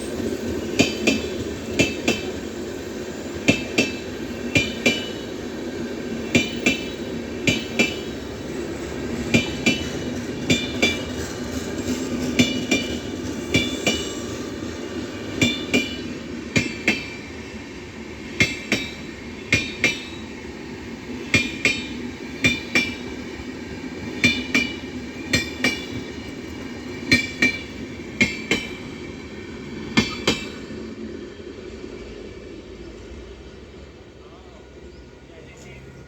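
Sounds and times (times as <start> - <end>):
train rumble: 0.0 - 36.0
train wheels clacking over rail joint: 0.2 - 2.4, 3.4 - 5.3, 6.3 - 17.3, 18.3 - 20.4, 21.2 - 30.8.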